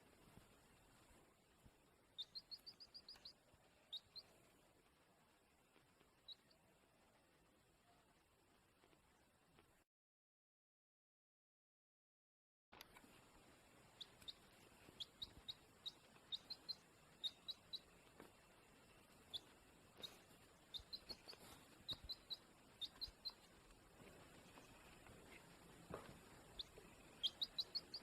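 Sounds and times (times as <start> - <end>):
baby chick peeping: 2.1 - 4.9, 5.8 - 6.6, 12.9 - 28.0.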